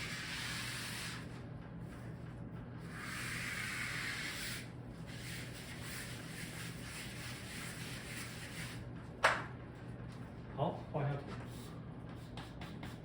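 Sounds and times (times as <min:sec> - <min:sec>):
low electrical hum: 0:00.0 - 0:13.0
rubbing on a chalkboard: 0:02.9 - 0:08.9, 0:11.4 - 0:13.0.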